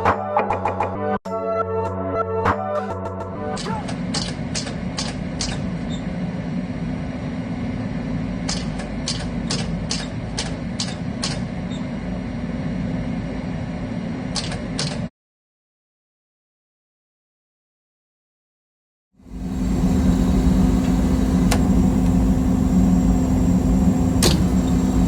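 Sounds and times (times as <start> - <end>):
air conditioner humming: 19.2 - 25.0.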